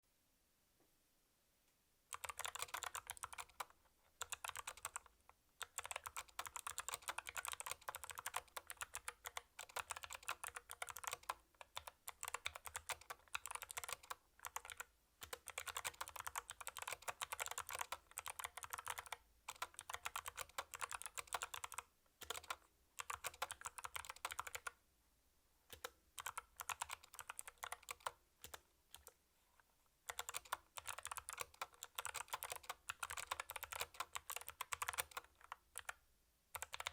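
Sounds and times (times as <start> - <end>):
clicky keyboard typing: 2.1 - 24.8, 25.7 - 29.2, 30.1 - 36.9.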